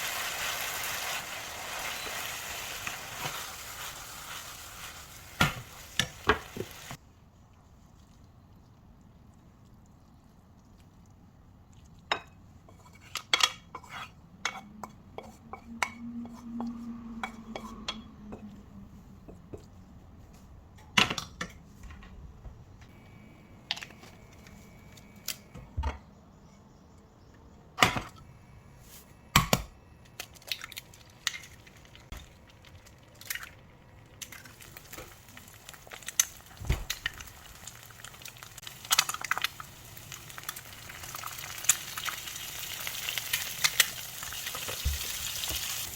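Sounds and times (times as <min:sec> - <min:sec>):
food sizzling in a pan: 0:00.0 - 0:07.0, 0:34.4 - 0:45.9.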